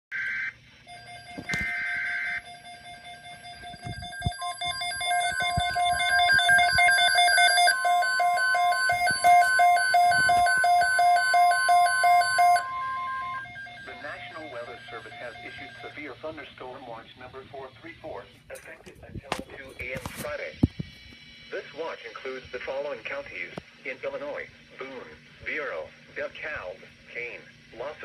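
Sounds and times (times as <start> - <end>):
electronic alarm beeping rapidly: 0.4 - 16.3
steady warning tone: 0.6 - 20.0.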